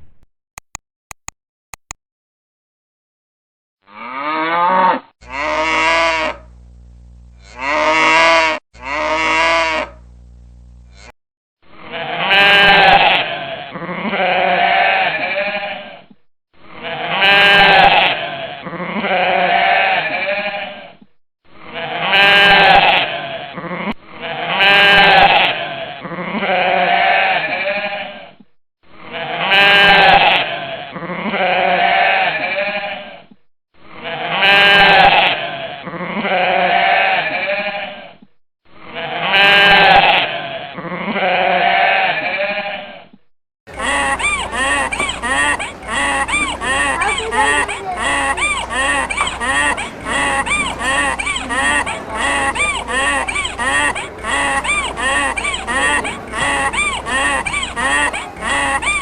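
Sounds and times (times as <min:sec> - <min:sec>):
goat bleating: 0:07.4 - 0:10.0, 0:10.9 - 0:11.2, 0:11.8 - 0:16.0, 0:16.8 - 0:20.9, 0:21.7 - 0:28.2, 0:29.1 - 0:33.2, 0:34.0 - 0:38.1, 0:38.9 - 0:43.0, 0:43.7 - 0:59.0.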